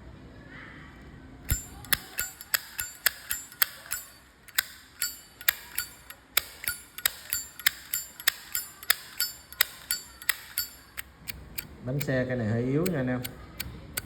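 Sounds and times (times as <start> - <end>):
lighter lid clicking open and shut: 1.5 - 12.1.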